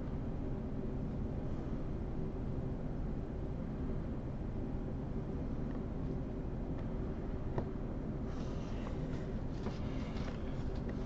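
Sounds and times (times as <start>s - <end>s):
low background hum: 0.0s - 11.0s
faint rustling handling noise: 8.2s - 11.0s.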